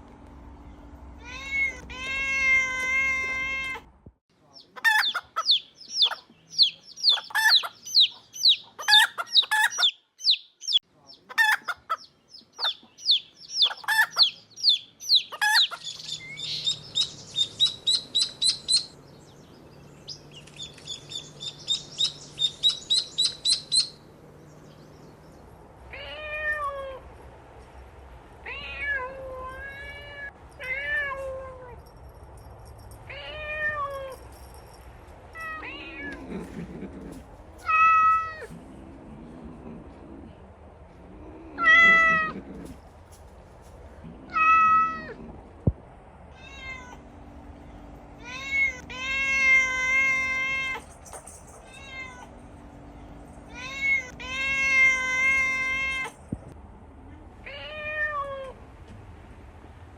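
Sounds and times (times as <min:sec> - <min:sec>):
high-pitched chirping and squeaking: 0:04.6 - 0:19.0, 0:20.1 - 0:24.0.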